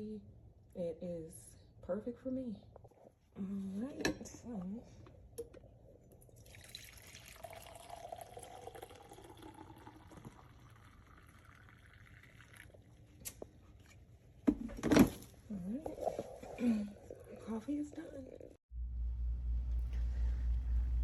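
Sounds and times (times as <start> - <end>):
water dripping into coffee carafe: 5.4 - 13.4.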